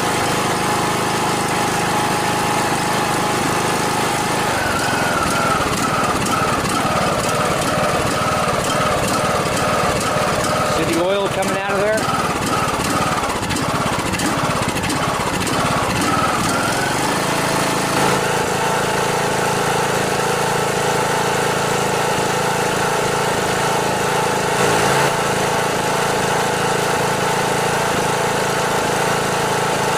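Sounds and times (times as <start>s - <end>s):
lawn mower engine running: 0.0s - 29.9s.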